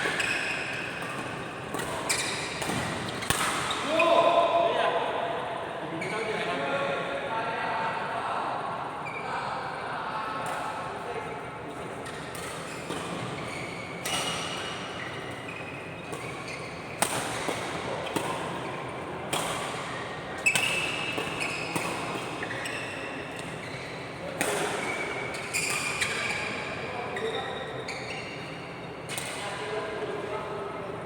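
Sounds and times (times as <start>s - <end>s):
shoe squeaks: 0.0s - 1.1s, 1.9s - 4.2s, 5.9s - 6.5s, 12.0s - 17.0s, 20.4s - 24.1s, 24.8s - 29.1s
racket hitting shuttle: 0.0s - 3.8s.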